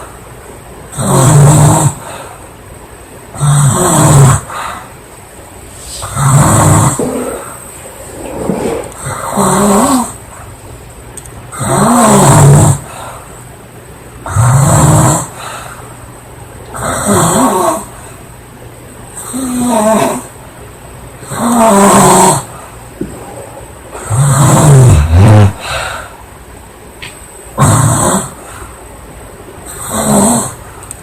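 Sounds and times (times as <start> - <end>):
girl snoring loudly: 1.0 - 2.2, 3.4 - 4.5, 6.0 - 7.5, 8.6 - 10.2, 11.5 - 12.9, 14.3 - 15.4, 16.8 - 17.9, 19.2 - 20.3, 21.3 - 22.5, 24.0 - 25.7, 27.6 - 28.4, 29.7 - 30.6
quiet breathing: 12.8 - 13.5, 15.3 - 16.1, 25.5 - 26.3.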